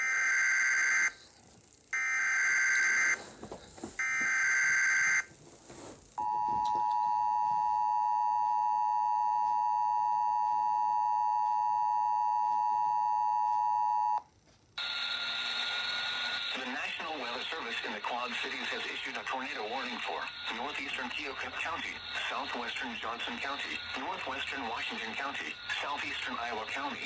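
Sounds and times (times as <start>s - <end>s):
digital data bursts: 16.2s - 27.0s.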